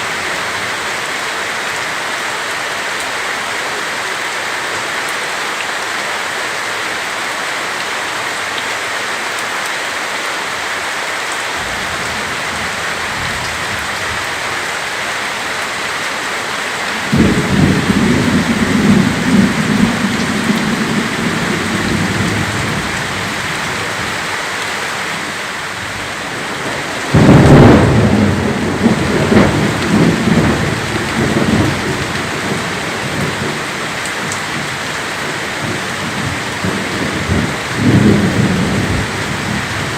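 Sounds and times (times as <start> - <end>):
heavy rain falling: 0.0 - 39.9
thunder rumbling: 11.6 - 14.9, 16.8 - 24.2, 25.9 - 34.8, 35.6 - 39.9.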